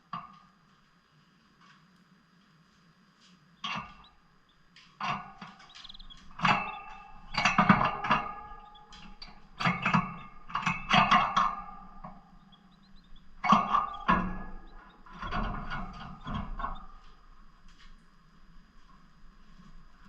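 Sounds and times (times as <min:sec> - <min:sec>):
birds squawking and chattering: 0:03.6 - 0:17.1.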